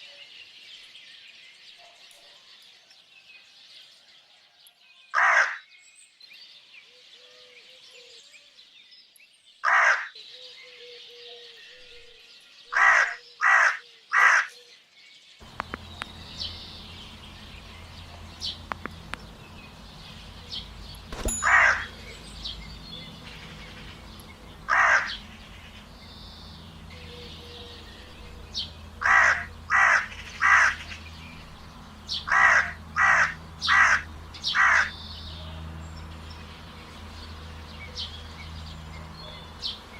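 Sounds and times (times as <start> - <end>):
birds chirping: 0.0 - 39.9
crow cawing: 5.2 - 5.7, 9.6 - 10.2, 12.7 - 14.6, 21.4 - 21.9, 24.6 - 26.0, 29.0 - 31.0, 32.2 - 35.0
low hum: 15.4 - 39.1.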